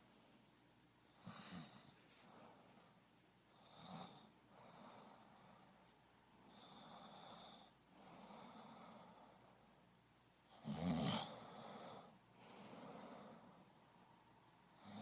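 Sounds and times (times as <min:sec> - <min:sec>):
person breathing: 0:01.2 - 0:09.9, 0:11.4 - 0:13.8.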